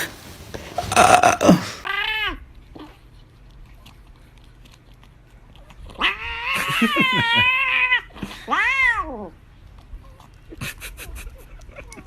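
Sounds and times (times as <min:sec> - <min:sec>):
cat yowling and meowing: 0:06.0 - 0:09.3.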